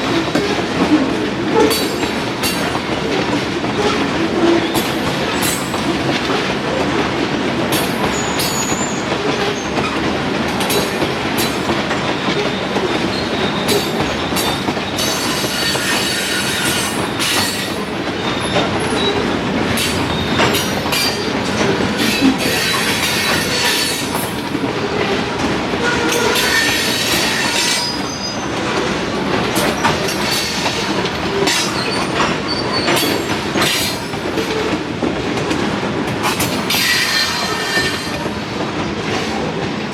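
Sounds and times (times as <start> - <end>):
rumble of train wheels: 0.0 - 39.9
wheels clicking over rail joints: 7.6 - 39.3
high-pitched wheel squeals: 12.4 - 21.4, 25.9 - 28.5, 36.7 - 38.2.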